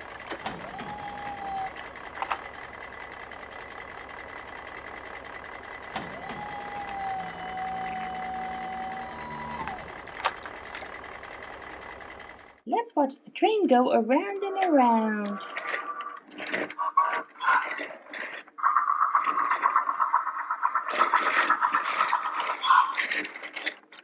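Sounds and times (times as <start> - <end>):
toy train motor whirring: 0.0 - 12.5
held tones: 0.0 - 12.6.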